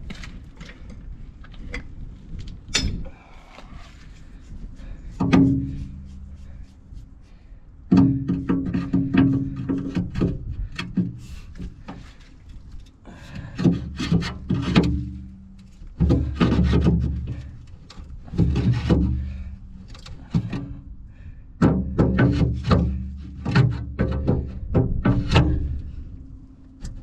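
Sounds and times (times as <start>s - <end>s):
rubbing or scraping: 3.6s - 7.3s, 13.5s - 20.8s, 22.0s - 26.1s.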